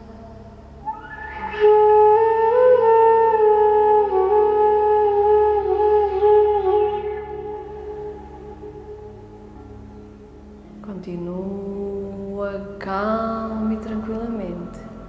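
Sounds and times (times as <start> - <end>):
crystal flute melody: 0.0 - 10.8
soft steady drone: 0.0 - 15.0.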